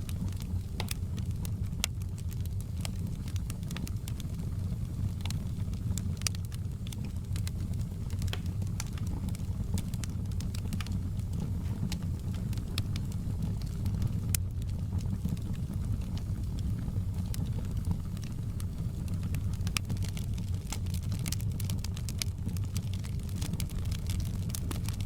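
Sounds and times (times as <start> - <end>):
wood fire crackling and popping: 0.0 - 25.0.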